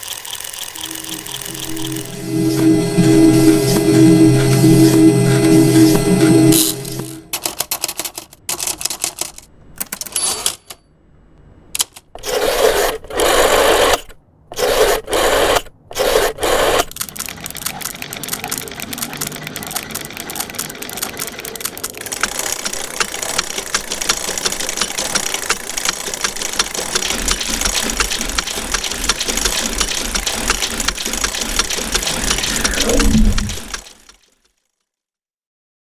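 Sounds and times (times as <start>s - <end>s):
mechanical clicks: 11.8s - 34.3s
machine clattering: 14.8s - 34.3s.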